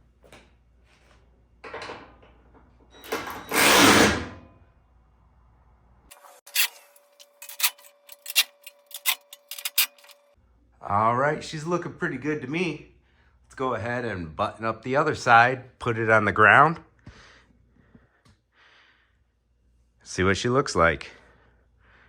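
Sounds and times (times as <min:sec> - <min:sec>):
socket tool rasping: 0:03.5 - 0:04.2
sharp metallic clicks: 0:06.5 - 0:10.2.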